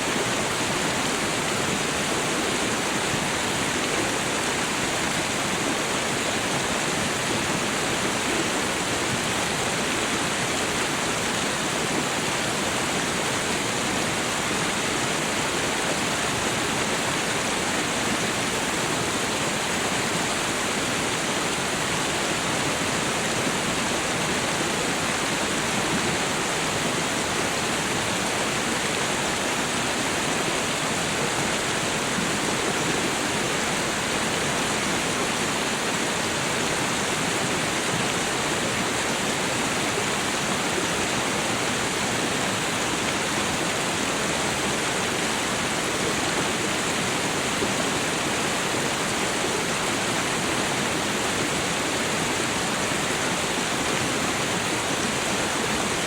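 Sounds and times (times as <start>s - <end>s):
waterfall rushing: 0.0s - 56.0s.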